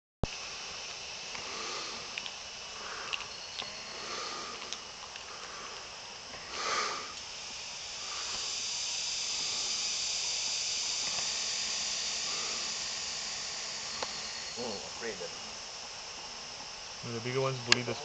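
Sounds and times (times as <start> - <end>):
insects droning shrilly: 0.2 - 18.0.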